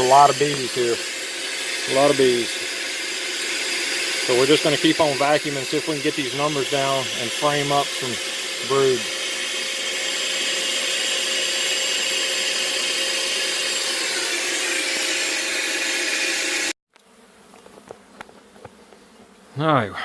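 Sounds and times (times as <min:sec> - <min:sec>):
vacuum rushing hiss of air: 0:00.0 - 0:16.8
bees buzzing: 0:00.0 - 0:20.0.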